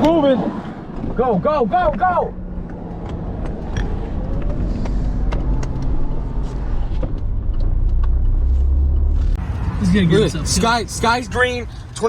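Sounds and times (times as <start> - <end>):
car engine: 0.0 - 12.0
road rumble: 0.0 - 12.0
sharp ticks of objects hitting car: 0.9 - 6.1, 6.9 - 9.2.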